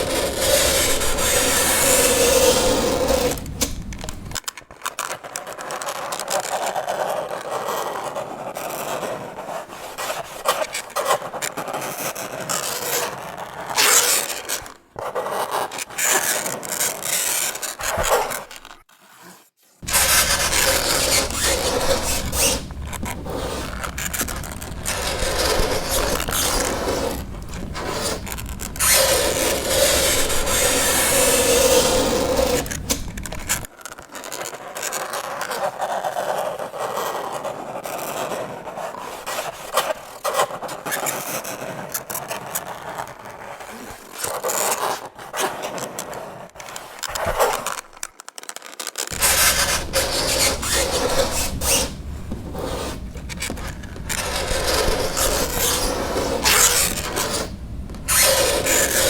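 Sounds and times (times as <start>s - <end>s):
fingernails scraping chalkboard: 0.0s - 4.4s, 7.0s - 33.7s, 49.1s - 59.0s
pitched screech: 49.1s - 59.0s.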